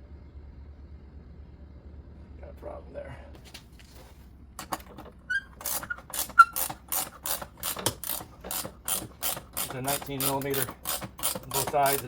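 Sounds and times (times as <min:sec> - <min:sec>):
ratchet wrench clicking: 0:05.6 - 0:12.0.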